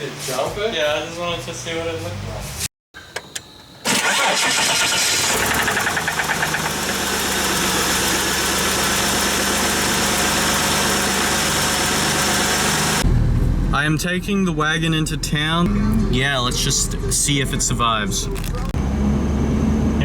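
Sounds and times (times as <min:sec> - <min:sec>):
car engine cranking on starter: 0:03.8 - 0:13.0
car engine idling: 0:03.9 - 0:13.8.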